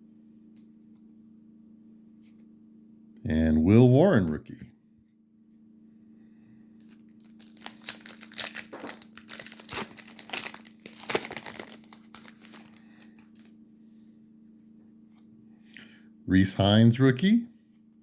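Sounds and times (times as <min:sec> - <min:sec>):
foil wrapper tearing and crinkling: 0:07.2 - 0:13.5.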